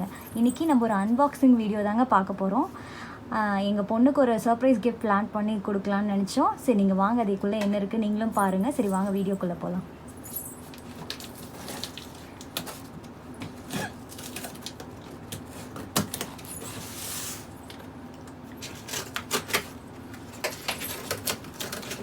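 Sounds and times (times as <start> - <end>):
package handling clicks and rustles: 10.7 - 16.8, 17.6 - 22.0.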